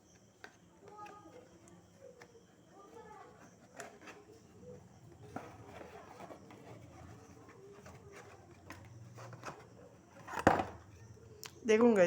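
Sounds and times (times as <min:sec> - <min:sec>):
low room noise: 0:00.0 - 0:12.0.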